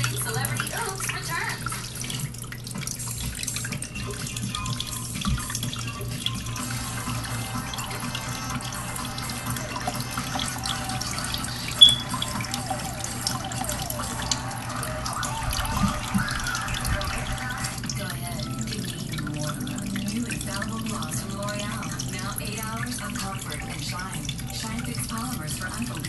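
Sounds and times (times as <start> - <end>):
low steady hum: 0.0 - 14.6
water running: 0.0 - 26.0
sharp high-pitched sound: 11.8 - 12.1.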